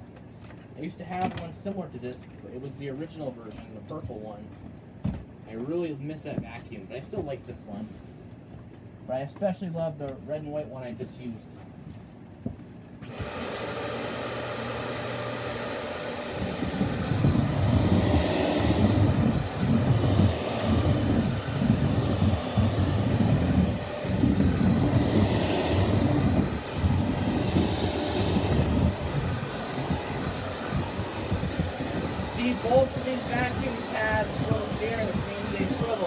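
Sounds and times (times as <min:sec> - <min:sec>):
vacuum cleaner running: 0:13.0 - 0:36.0.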